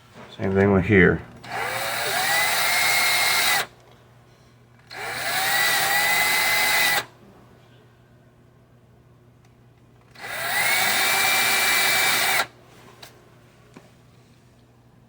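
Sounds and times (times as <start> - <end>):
cordless drill whining: 1.4 - 3.7, 4.8 - 7.1, 10.1 - 12.6.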